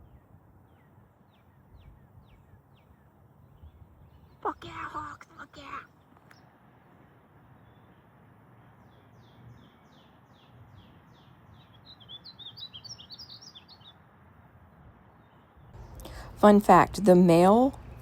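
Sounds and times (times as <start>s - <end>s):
bird singing whistled notes: 8.8s - 14.0s.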